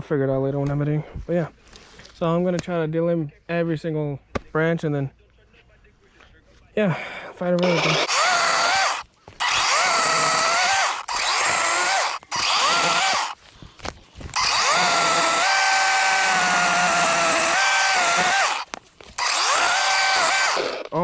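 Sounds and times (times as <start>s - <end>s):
cordless chainsaw motor whine: 7.6s - 13.4s, 14.3s - 20.9s.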